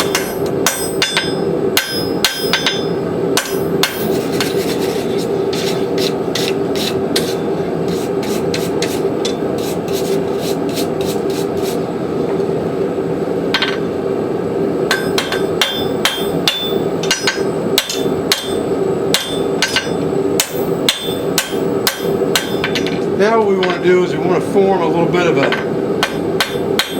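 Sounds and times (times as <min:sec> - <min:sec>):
hammer striking metal on anvil: 0:00.0 - 0:04.5, 0:14.9 - 0:23.0, 0:25.5 - 0:26.9
steady hum: 0:00.0 - 0:26.9.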